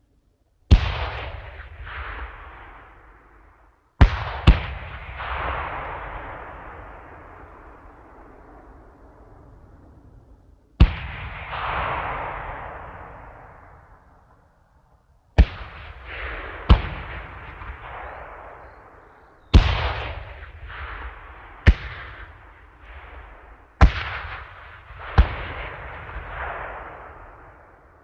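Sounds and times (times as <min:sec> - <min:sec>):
explosion blasts: 0:04.0 - 0:14.2, 0:15.4 - 0:27.6.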